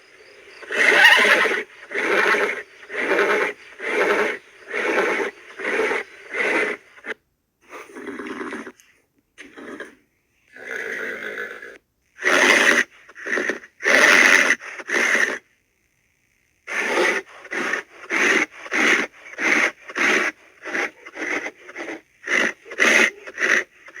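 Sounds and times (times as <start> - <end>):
horse breathing: 0.2 - 6.8.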